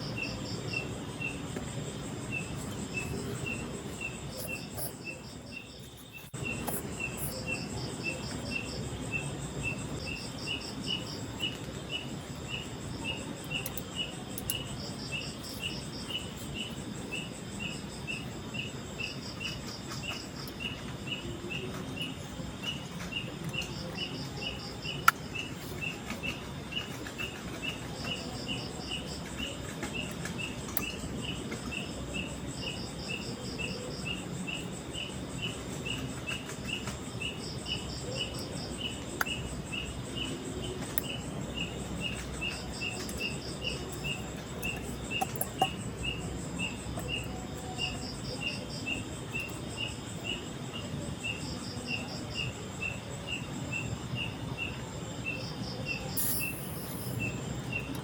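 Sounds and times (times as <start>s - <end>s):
insect pulsed trills: 0.0s - 58.0s
insect short even chirps: 56.1s - 57.9s.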